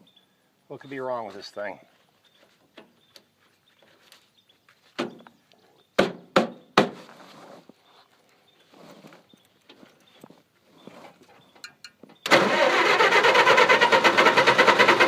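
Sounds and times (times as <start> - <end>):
sharp knocks: 6.0 - 7.0.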